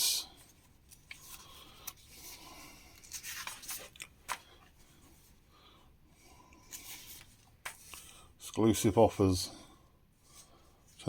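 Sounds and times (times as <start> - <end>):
magazine pages rustling: 0.4 - 5.0, 6.7 - 8.2.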